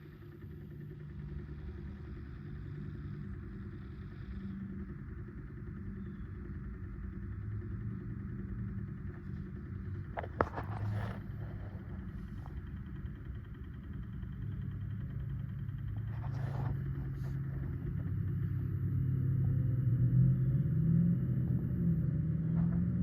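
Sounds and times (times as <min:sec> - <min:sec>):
cooling fan droning: 0:00.0 - 0:23.0.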